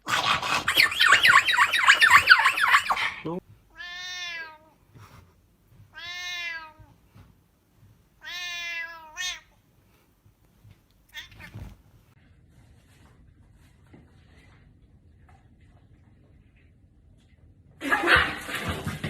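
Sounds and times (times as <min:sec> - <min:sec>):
high wavering squealing: 0:00.7 - 0:03.2
cat meowing: 0:03.7 - 0:04.8, 0:05.9 - 0:07.0, 0:08.2 - 0:09.6, 0:11.1 - 0:11.8.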